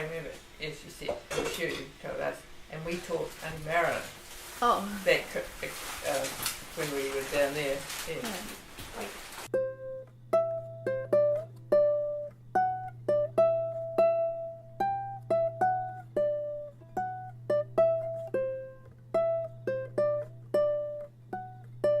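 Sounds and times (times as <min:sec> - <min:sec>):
plucked string melody: 0:09.5 - 0:22.0.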